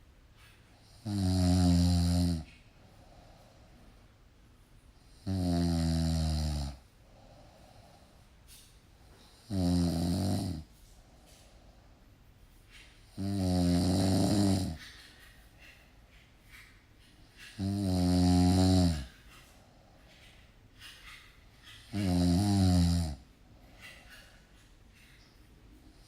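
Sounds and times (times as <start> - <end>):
quiet breathing: 0.0 - 26.0
loud snores: 0.9 - 2.5, 5.1 - 6.8, 9.4 - 10.7, 13.1 - 14.8, 17.6 - 19.2, 21.9 - 23.2.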